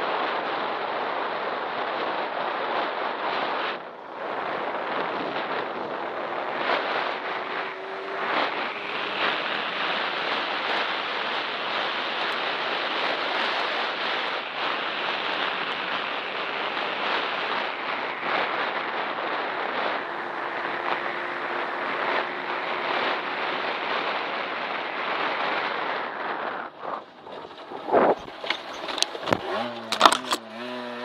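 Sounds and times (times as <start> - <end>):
wind rushing over microphone: 0.0 - 31.0
faint dirt bike engine: 0.7 - 31.0.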